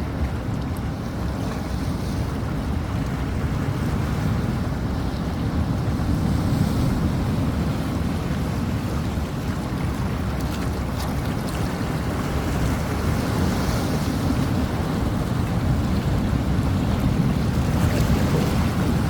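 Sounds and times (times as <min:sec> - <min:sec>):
wind buffeting microphone: 0:00.0 - 0:19.0
sea surf breaking: 0:11.9 - 0:19.0.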